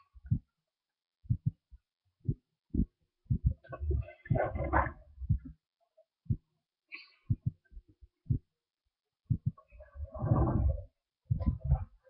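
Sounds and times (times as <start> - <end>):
dull low thumps: 0.2 - 0.5, 1.2 - 5.6, 6.3 - 6.5, 7.3 - 8.6, 9.3 - 12.0.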